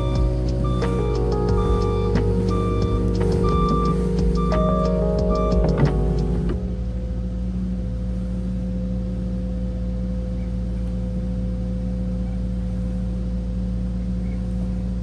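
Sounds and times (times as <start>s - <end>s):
excavator diesel engine running: 0.0s - 10.3s.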